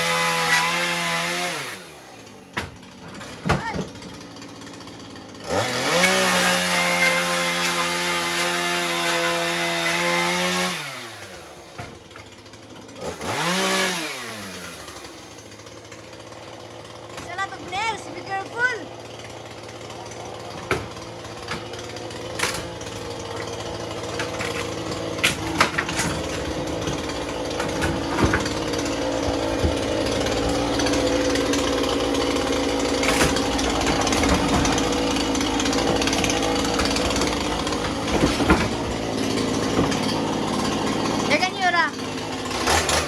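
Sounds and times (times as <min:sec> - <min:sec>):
chainsaw running: 0:00.0 - 0:43.0
sharp knocks and clatter: 0:20.4 - 0:41.2.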